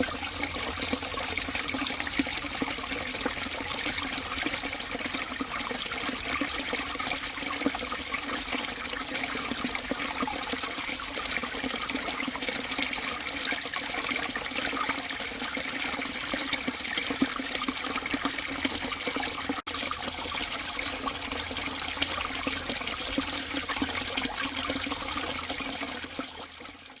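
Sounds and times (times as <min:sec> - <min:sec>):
stream water trickling: 0:00.0 - 0:27.0.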